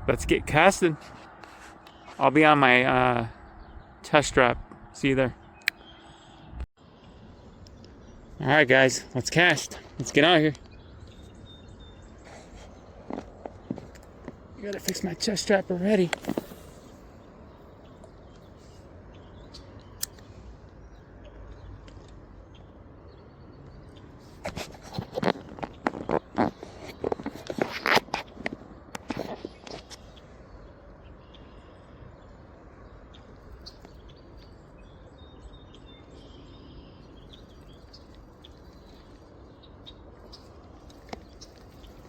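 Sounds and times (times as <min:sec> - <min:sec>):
low outdoor background: 0:00.0 - 0:42.0
sharp click: 0:19.8 - 0:20.2
faint bird chirps: 0:30.0 - 0:42.0.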